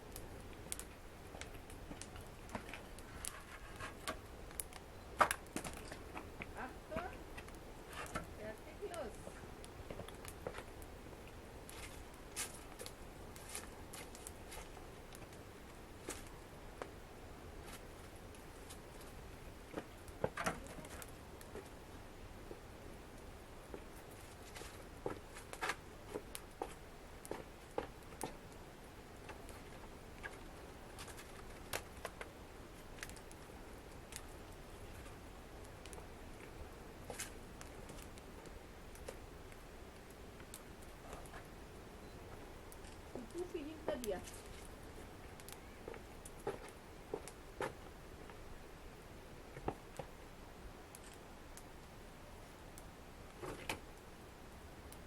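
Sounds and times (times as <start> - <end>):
faint steady hiss: 0.0 - 55.0
wood fire crackling: 0.0 - 55.0.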